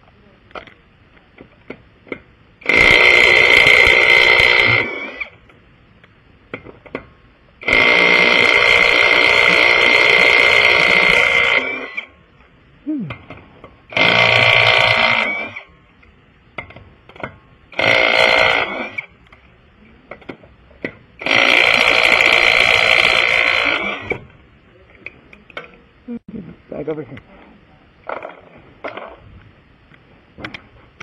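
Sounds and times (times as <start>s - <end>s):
impact wrench running: 17.8s - 19.1s.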